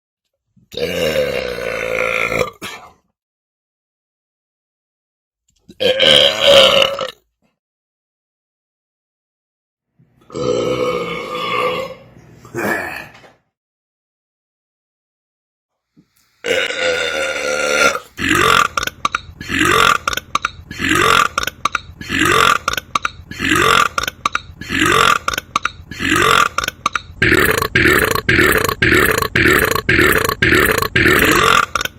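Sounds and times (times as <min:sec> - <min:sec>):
person burping: 0:00.7 - 0:03.0, 0:05.7 - 0:07.2, 0:10.3 - 0:13.3, 0:16.4 - 0:31.9.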